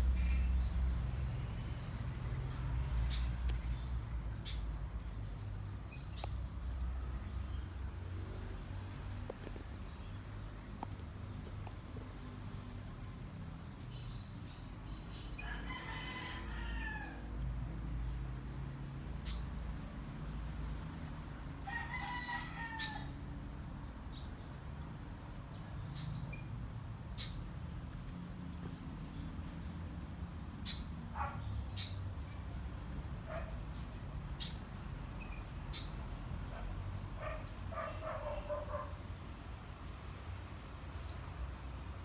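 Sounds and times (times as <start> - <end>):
rooster crowing: 15.4 - 17.3, 21.6 - 23.2.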